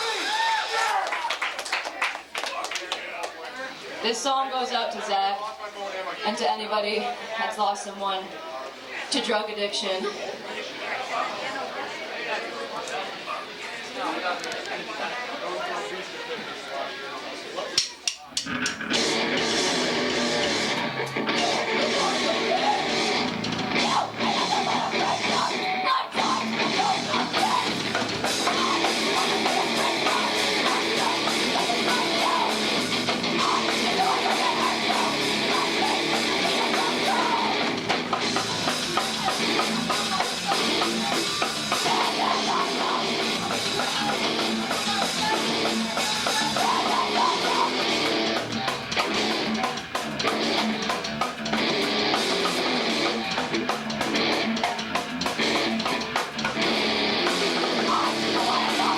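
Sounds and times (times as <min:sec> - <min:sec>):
heavy electric guitars: 0:00.0 - 0:00.5, 0:18.3 - 0:58.9
drum kit: 0:00.0 - 0:00.6, 0:17.8 - 0:58.9.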